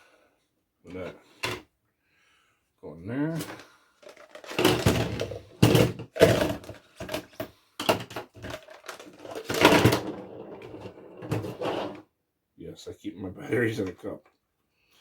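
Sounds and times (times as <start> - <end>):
batteries clattering in a cup: 3.4 - 10.1.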